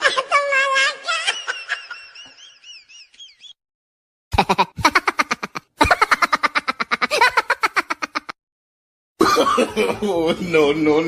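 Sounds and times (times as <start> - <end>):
pulsing laugh sound effect: 4.3 - 8.4.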